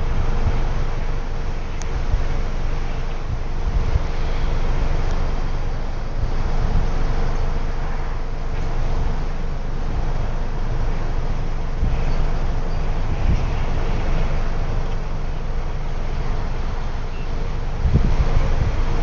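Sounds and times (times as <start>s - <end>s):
outdoor rumble: 0.0s - 19.0s
wind buffeting microphone: 0.0s - 19.0s.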